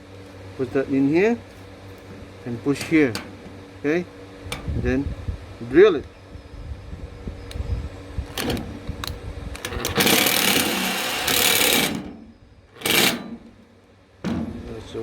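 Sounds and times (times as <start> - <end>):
drill clicks: 8.3 - 12.1, 12.8 - 13.4
power drill driving screw into metal: 8.4 - 8.7, 9.6 - 12.2, 12.8 - 13.5.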